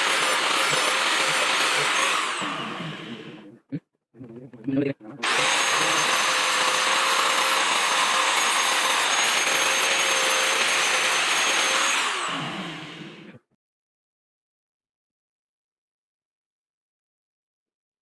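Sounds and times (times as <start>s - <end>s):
power tool motor whining: 0.0s - 3.4s, 5.2s - 13.4s.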